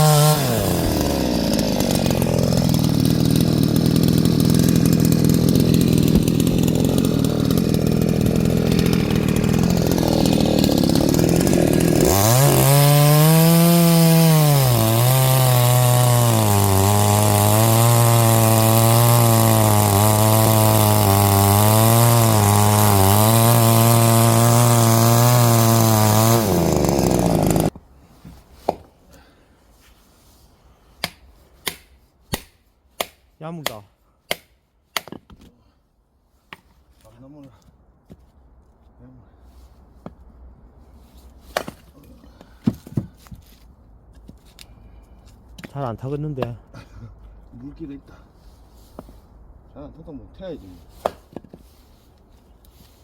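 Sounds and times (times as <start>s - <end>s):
chainsaw cutting wood: 0.0s - 27.8s.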